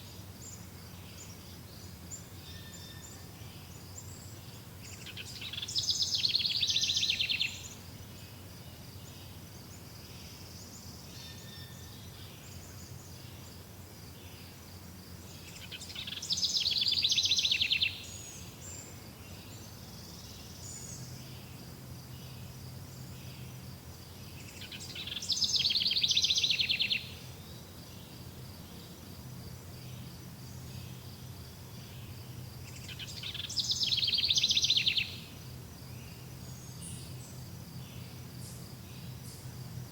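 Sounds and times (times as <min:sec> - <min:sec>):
faint insect-like buzz: 0:00.0 - 0:39.9
songbird trilling: 0:04.9 - 0:07.8, 0:15.5 - 0:18.9, 0:24.4 - 0:27.2, 0:32.7 - 0:35.3.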